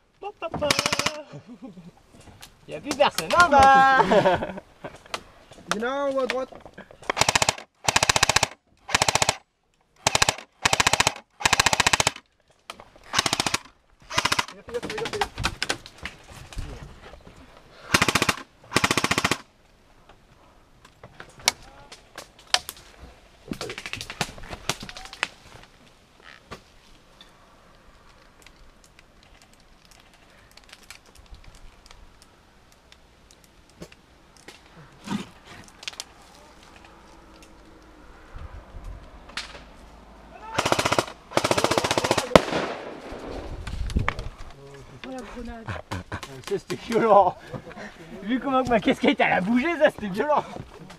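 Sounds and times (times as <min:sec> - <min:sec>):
airsoft gun full-auto bursts: 0:00.7 - 0:01.2, 0:07.1 - 0:09.4, 0:10.0 - 0:12.2, 0:13.1 - 0:14.6, 0:17.9 - 0:19.4, 0:40.6 - 0:42.8.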